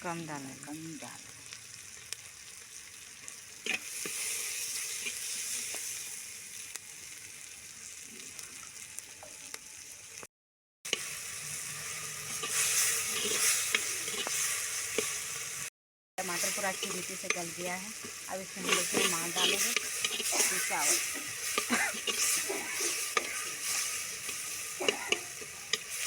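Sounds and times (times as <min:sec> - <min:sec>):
vegetables sizzling in oil: 0:00.0 - 0:10.3, 0:10.9 - 0:26.0.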